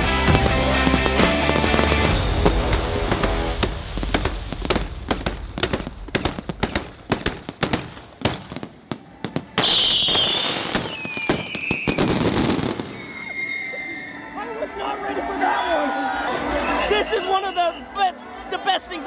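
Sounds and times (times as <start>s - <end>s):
firework cracks and pops: 0.3s - 13.5s
shrill falling whistle: 9.6s - 14.4s.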